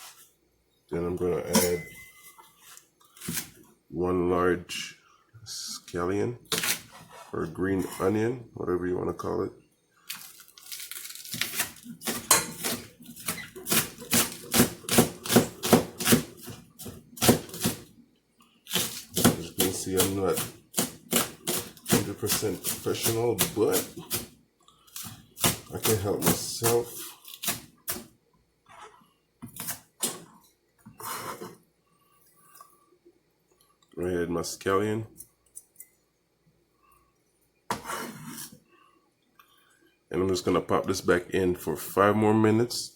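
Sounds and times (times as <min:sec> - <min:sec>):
dishes and utensils clinking: 0:01.5 - 0:02.5
knife chopping on cutting board: 0:11.4 - 0:17.9, 0:18.7 - 0:24.3, 0:25.0 - 0:28.1.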